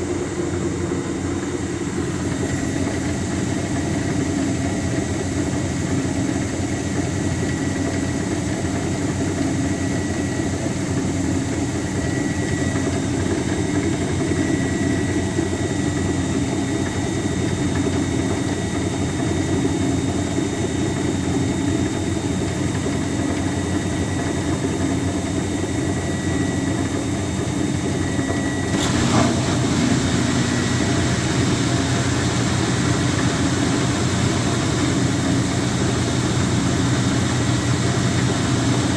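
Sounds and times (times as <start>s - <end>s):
washing machine knocking and clanking: 0.0s - 38.9s.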